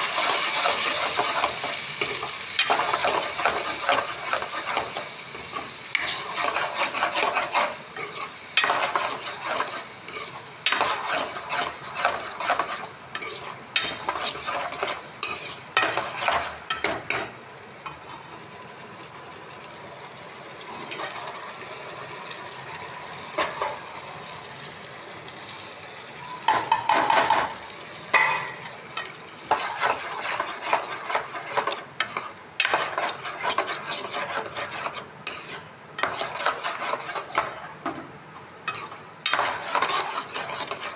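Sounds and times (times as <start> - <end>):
spatula scraping frying pan: 0.0 - 17.3, 20.7 - 21.4, 23.4 - 23.8, 28.2 - 37.8, 38.7 - 40.9
food sizzling in frying pan: 0.0 - 37.8, 38.6 - 40.9.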